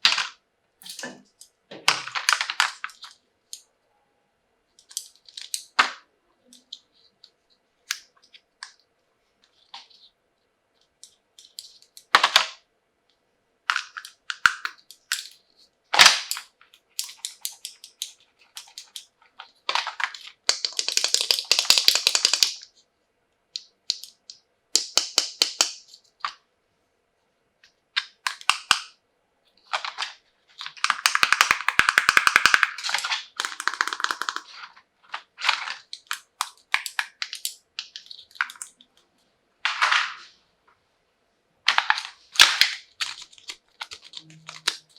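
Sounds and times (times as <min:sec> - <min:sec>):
plastic pieces clicking and tapping: 0:04.8 - 0:06.8, 0:13.7 - 0:15.4, 0:16.0 - 0:19.1, 0:19.7 - 0:22.7, 0:23.6 - 0:26.4, 0:28.0 - 0:29.0, 0:29.7 - 0:39.0, 0:41.7 - 0:44.9
packaging crinkling: 0:41.7 - 0:44.9.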